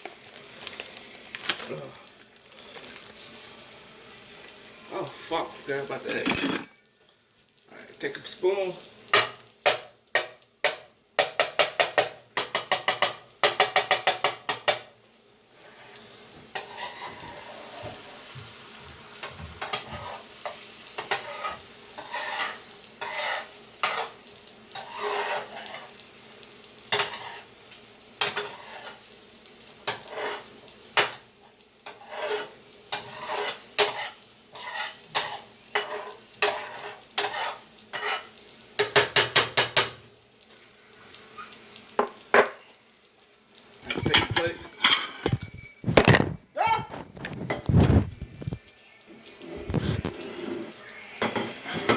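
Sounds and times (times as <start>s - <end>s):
food sizzling: 0.0s - 51.9s
spoon scraping frying pan: 6.0s - 6.8s, 15.7s - 18.3s, 19.2s - 26.0s, 26.9s - 27.5s, 28.2s - 29.1s, 29.8s - 31.2s, 31.8s - 39.9s, 43.8s - 51.9s.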